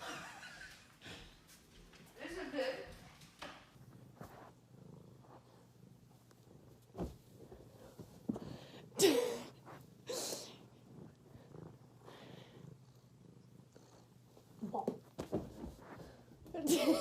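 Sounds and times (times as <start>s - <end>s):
animal purring: 3.7s - 15.0s.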